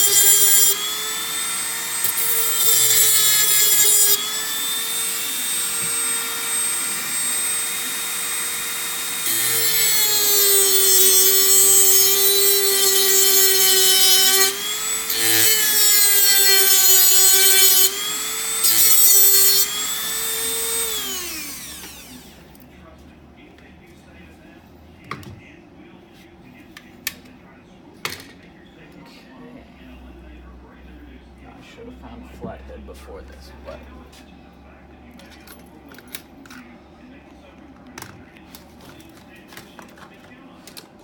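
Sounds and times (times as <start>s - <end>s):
cutting wheel grinding metal: 0.0s - 22.5s
rotary tool motor whining: 0.0s - 22.5s.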